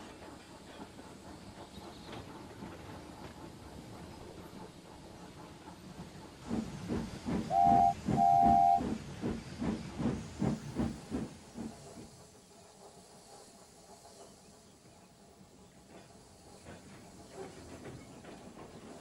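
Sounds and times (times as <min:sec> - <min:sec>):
steam locomotive chuffing: 0:00.0 - 0:19.0
steam locomotive hissing: 0:00.0 - 0:19.0
train whistle tooting: 0:07.5 - 0:08.9.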